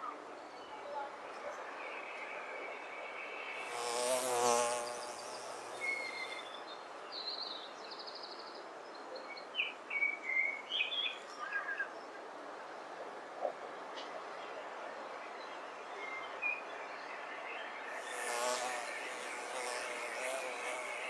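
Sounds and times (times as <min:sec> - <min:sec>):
small birds chirping: 0:03.5 - 0:06.6
flying insect buzzing: 0:03.6 - 0:06.5, 0:17.9 - 0:21.0.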